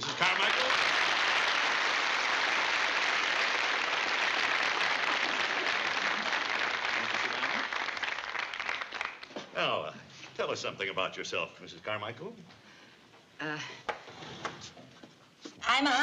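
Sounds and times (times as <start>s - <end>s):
audience applauding: 0.0s - 9.4s.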